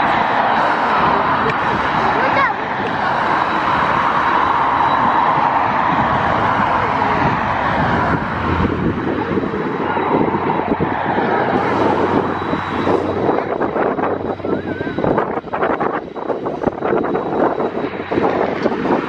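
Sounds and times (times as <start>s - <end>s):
turboprop engines roaring: 0.0s - 19.0s.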